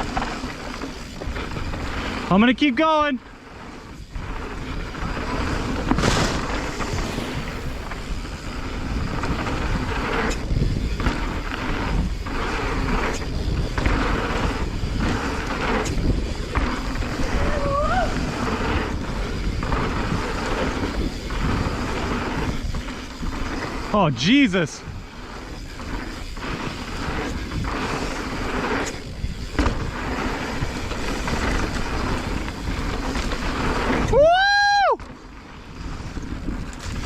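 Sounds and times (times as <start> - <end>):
bike tyres on dirt trail: 0.0 - 37.0
wind on microphone: 3.8 - 37.0
bike knocks and rattles: 4.0 - 24.0, 24.9 - 34.2, 35.0 - 37.0
short rising squeal: 6.2 - 8.7.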